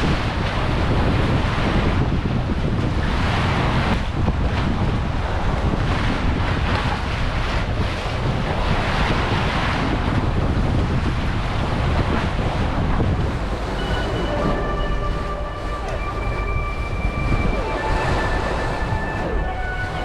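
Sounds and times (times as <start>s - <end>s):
wind buffeting microphone: 0.0s - 20.0s
steady tones: 13.1s - 20.0s.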